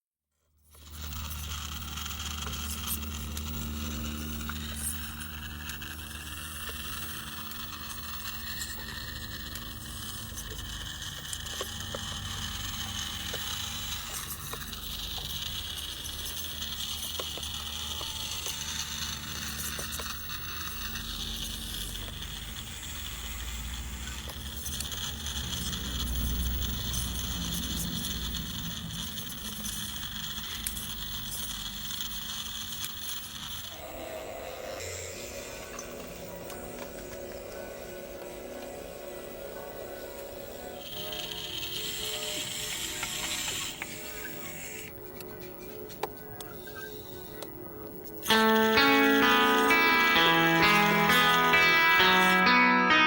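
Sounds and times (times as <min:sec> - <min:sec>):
small clicks and scrapes: 0:00.6 - 0:33.8, 0:40.8 - 0:48.2
short motor whines: 0:00.6 - 0:45.0
motor and hydraulic hum: 0:00.7 - 0:48.7.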